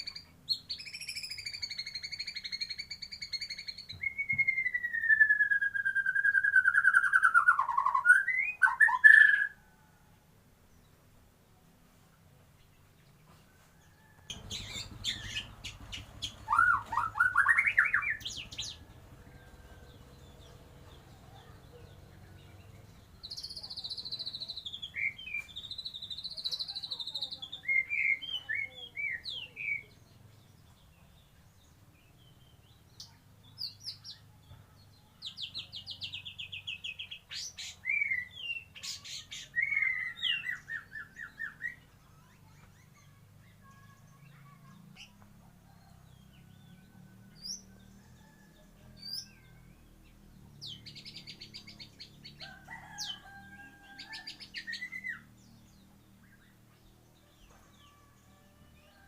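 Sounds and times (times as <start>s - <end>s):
songbird singing: 0.0s - 59.0s
faint low hum: 9.5s - 37.5s.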